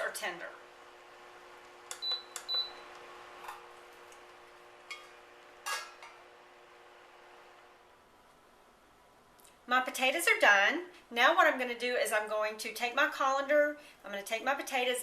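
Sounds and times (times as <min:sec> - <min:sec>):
metal pot lid clinking: 0:04.9 - 0:06.2.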